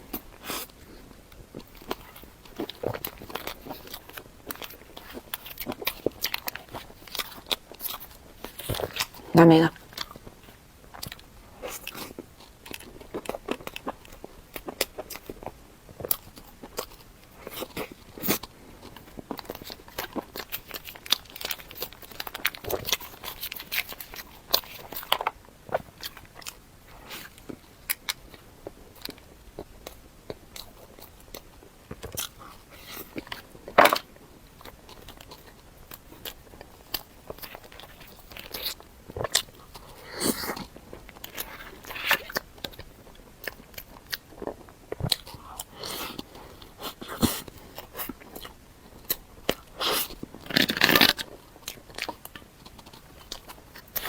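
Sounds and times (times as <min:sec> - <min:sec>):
person chewing crunchy food: 0:00.0 - 0:54.0.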